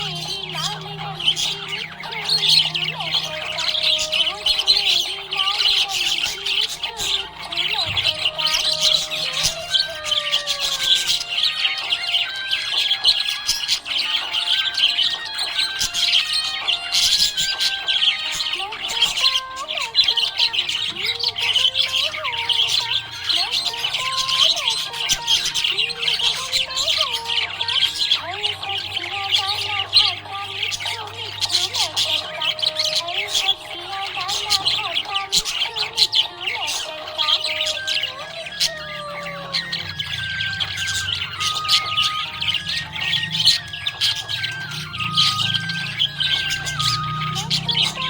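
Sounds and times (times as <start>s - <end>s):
budgerigars chattering and chirping: 0.0s - 48.0s
slow melody of held notes: 36.7s - 48.0s.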